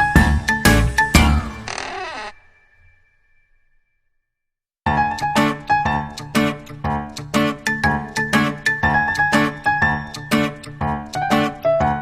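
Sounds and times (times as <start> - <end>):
background music with steady beat: 0.0 - 1.6.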